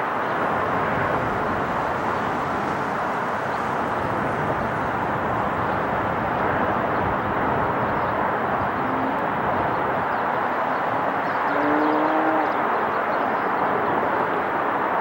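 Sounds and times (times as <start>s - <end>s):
jet engines rushing: 0.0s - 11.3s.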